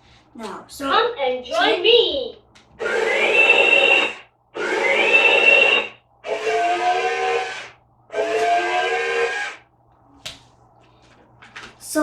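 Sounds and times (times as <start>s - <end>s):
robot toy electronic sound effects: 2.8s - 9.5s.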